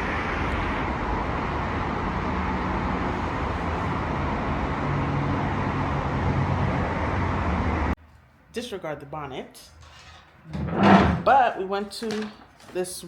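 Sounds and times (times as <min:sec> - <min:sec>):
low engine hum: 0:00.0 - 0:08.0
vehicle road noise: 0:00.0 - 0:08.0.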